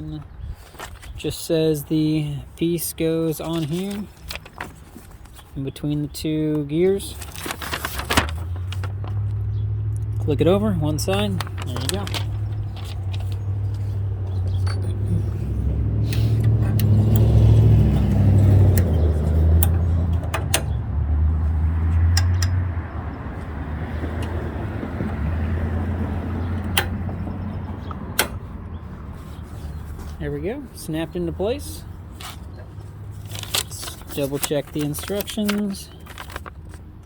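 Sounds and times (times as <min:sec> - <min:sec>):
low engine rumble: 0:00.0 - 0:37.0
sharp plastic clicks: 0:18.0 - 0:20.8, 0:26.6 - 0:27.2, 0:27.8 - 0:28.5.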